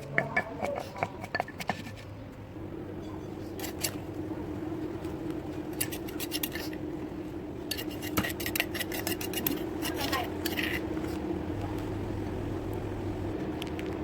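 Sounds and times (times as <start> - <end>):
steady low hum: 0.0 - 14.0
rapid kitchen clicks and clinks: 7.7 - 10.8.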